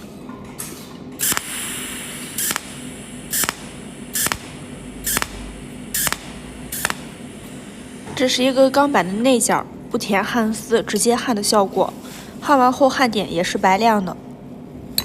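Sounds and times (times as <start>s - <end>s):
spot welder snapping cracks: 1.2s - 8.8s.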